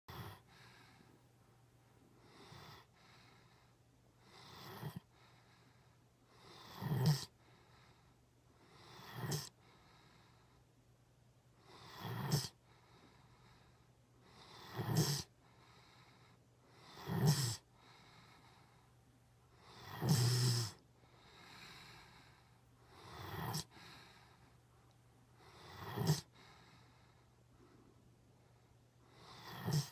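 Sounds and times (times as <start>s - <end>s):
person snoring: 6.5s - 7.3s, 8.8s - 9.5s, 14.5s - 15.3s, 16.8s - 17.6s, 19.6s - 20.8s, 22.9s - 23.9s, 25.5s - 26.4s, 29.2s - 29.9s.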